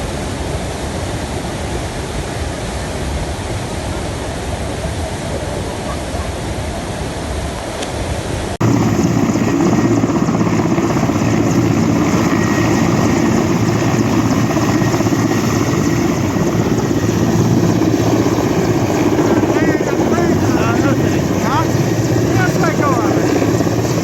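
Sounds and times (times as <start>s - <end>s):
rushing floodwater: 0.0s - 24.0s
helicopter running overhead: 8.6s - 24.0s.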